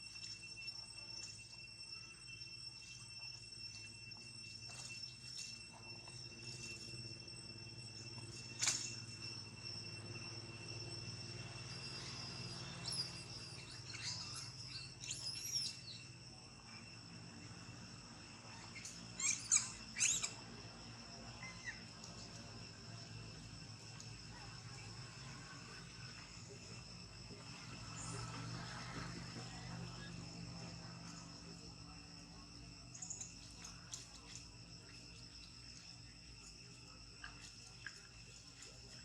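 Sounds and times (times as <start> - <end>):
high insect drone: 0.0 - 39.0
high-pitched squeaky calls: 18.5 - 20.5.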